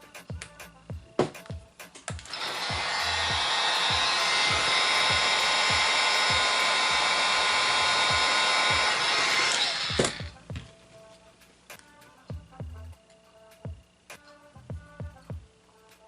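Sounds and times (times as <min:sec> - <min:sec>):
background music with steady beat: 0:00.0 - 0:16.0
heat gun blowing: 0:02.2 - 0:10.3.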